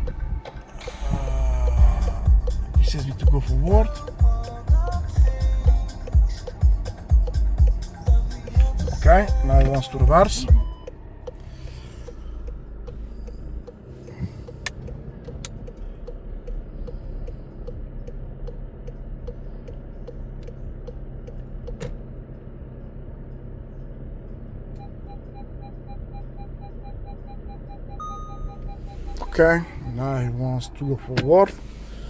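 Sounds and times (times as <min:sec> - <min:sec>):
parking sensor beeping: 0:00.0 - 0:04.5, 0:05.6 - 0:20.2, 0:20.8 - 0:22.2, 0:24.6 - 0:32.0
car engine low hum: 0:00.0 - 0:32.0
steady light ticking: 0:12.0 - 0:22.0, 0:28.9 - 0:31.6.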